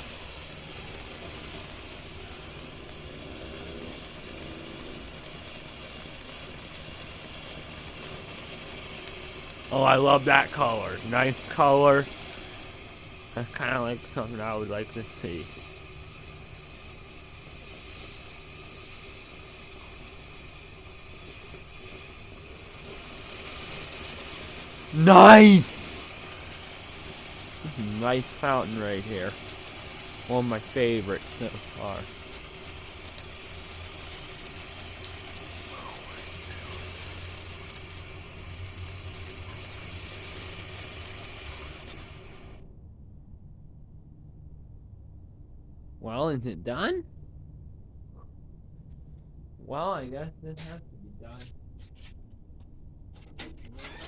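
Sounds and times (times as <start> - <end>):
firework fountain hissing: 0.0 - 42.6, 53.4 - 54.0.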